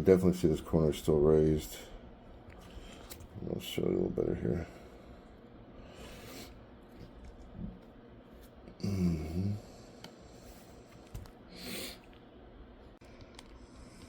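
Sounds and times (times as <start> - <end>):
man humming: 8.7 - 9.8.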